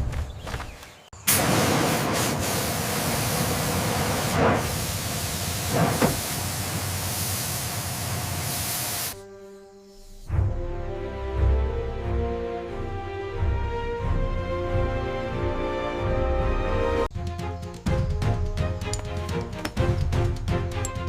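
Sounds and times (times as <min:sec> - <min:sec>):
pressurised spray hissing: 0:01.3 - 0:09.2.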